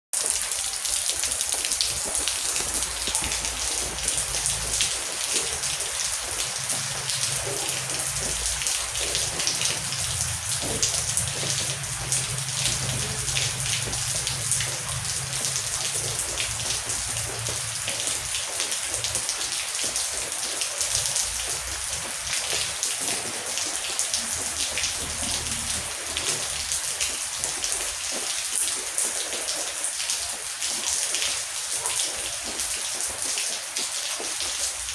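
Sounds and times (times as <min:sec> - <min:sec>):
heavy rain pattering: 0:00.2 - 0:34.9
distant thunder rumble: 0:01.9 - 0:19.3.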